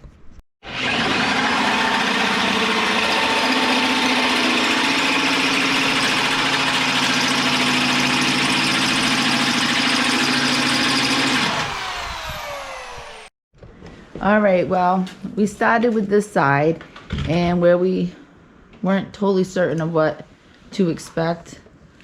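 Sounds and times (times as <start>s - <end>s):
power drill motor running: 0.6s - 13.3s.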